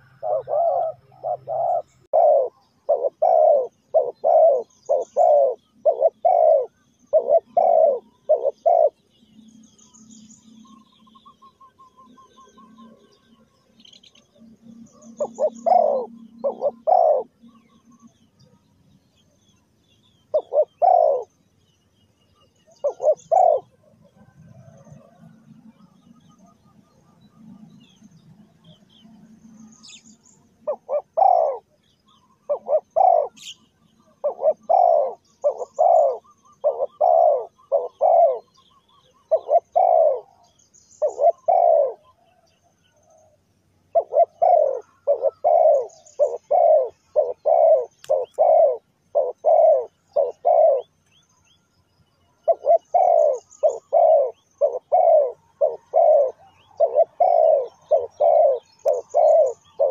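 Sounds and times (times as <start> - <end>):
doves cooing: 0.0 - 9.0, 14.9 - 18.2, 20.2 - 21.4, 22.7 - 26.6, 28.6 - 42.5, 43.2 - 51.0, 52.4 - 59.9
faint high bird chirps: 0.0 - 59.9.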